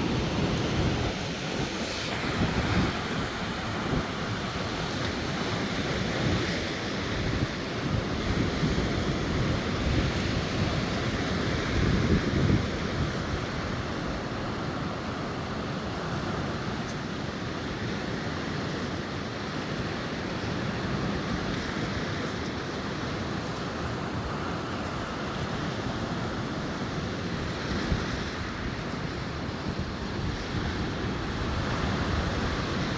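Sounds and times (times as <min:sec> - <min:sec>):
wind buffeting microphone: 0:00.0 - 0:14.6, 0:27.4 - 0:32.9
surf breaking on shore: 0:00.0 - 0:32.9.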